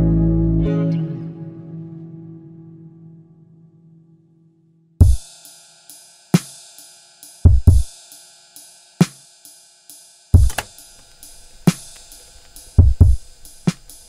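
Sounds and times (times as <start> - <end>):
electronic drum beat: 5.0 - 5.2, 7.4 - 8.0, 10.4 - 14.0.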